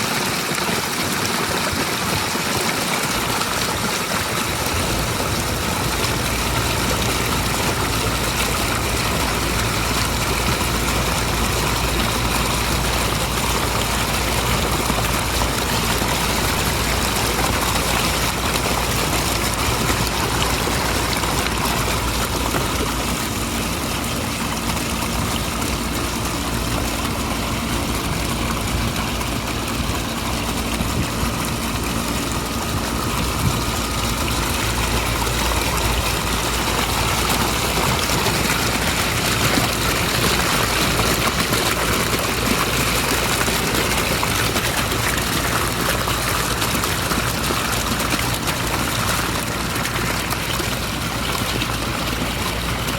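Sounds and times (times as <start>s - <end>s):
water pouring down rocks: 0.0s - 52.9s
steady low rumble: 4.3s - 45.2s.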